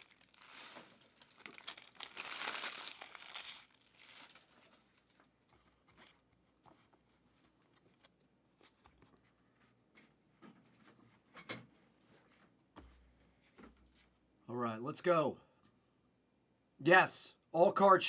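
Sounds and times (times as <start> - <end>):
wrappers crinkling and tearing: 0.0 - 5.3.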